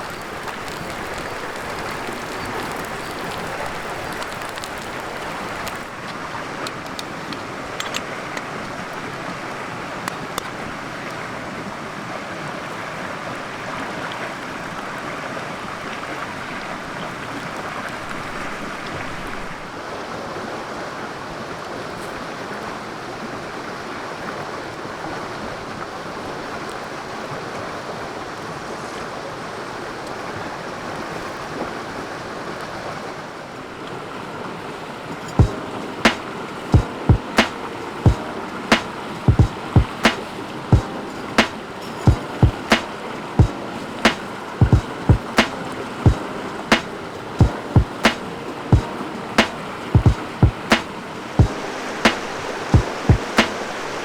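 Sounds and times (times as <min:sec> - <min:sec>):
river water rushing: 0:00.0 - 0:54.0.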